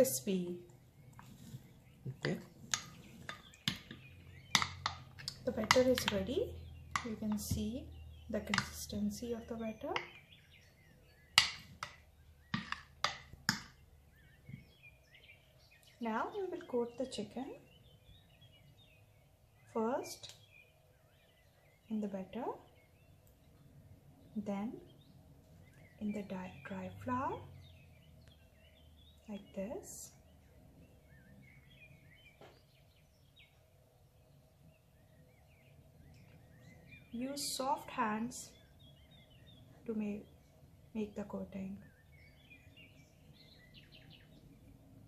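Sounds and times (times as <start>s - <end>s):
birds chirping: 0.0s - 45.0s
utensil tapping against bowl: 2.2s - 6.3s, 8.4s - 9.0s, 11.4s - 13.8s.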